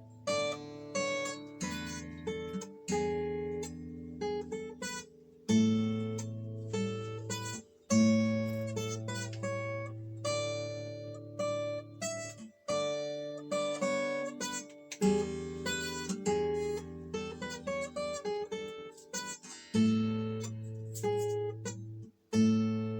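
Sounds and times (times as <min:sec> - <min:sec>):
acoustic guitar chords and notes: 0:00.0 - 0:22.9.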